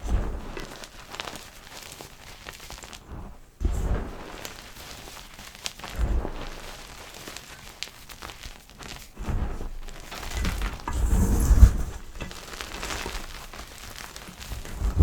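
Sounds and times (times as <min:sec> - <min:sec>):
chalk being crushed: 0:10.1 - 0:15.0.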